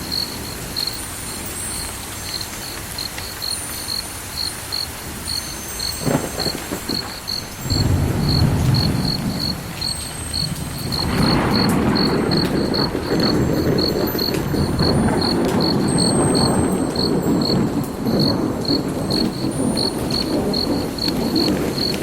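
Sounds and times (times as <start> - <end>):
cricket chirping: 0.0 - 22.0
low rumbling noise: 7.6 - 22.0.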